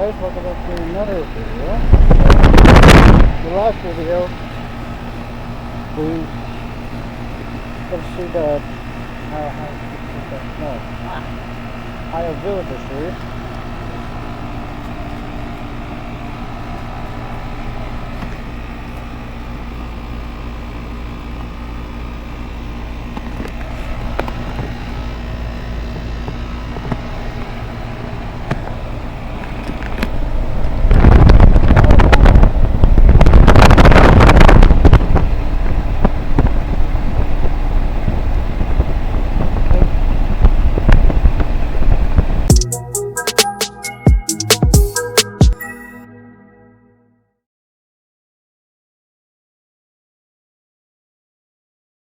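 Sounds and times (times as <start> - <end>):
loud rushing blowing noise: 0.0 - 4.4
air conditioner humming: 0.0 - 45.8.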